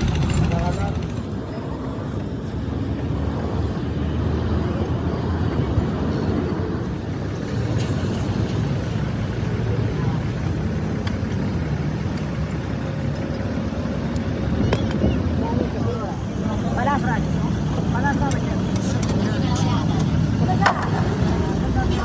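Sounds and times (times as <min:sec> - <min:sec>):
low traffic rumble: 0:00.0 - 0:22.0
indistinct voices: 0:06.8 - 0:22.0.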